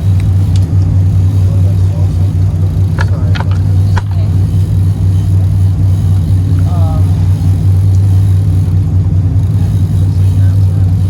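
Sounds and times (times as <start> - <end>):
sharp clicks: 0.0 - 1.0, 2.8 - 4.3, 7.4 - 8.8
boat engine droning: 0.0 - 11.0.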